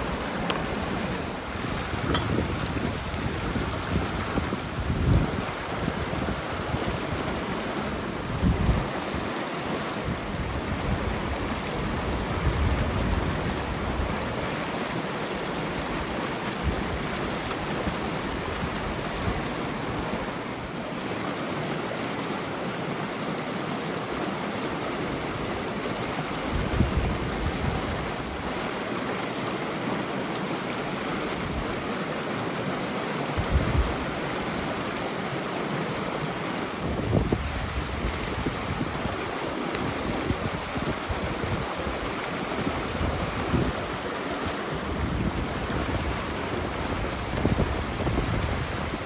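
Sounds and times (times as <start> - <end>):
wind buffeting microphone: 0.0 - 9.3, 10.0 - 14.6, 26.3 - 28.6, 33.4 - 34.8, 36.8 - 49.0
river water rushing: 0.0 - 49.0.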